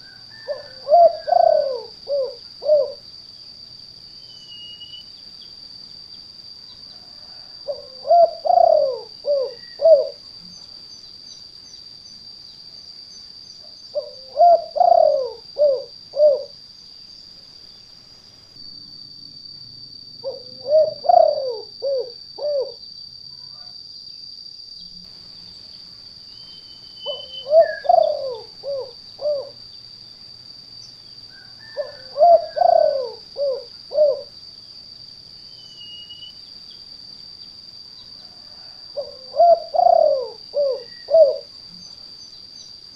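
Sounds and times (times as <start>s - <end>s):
dove cooing: 0.0s - 3.0s, 7.0s - 10.2s, 13.9s - 16.6s, 20.2s - 22.8s, 27.0s - 29.6s, 31.6s - 34.3s, 38.4s - 41.5s.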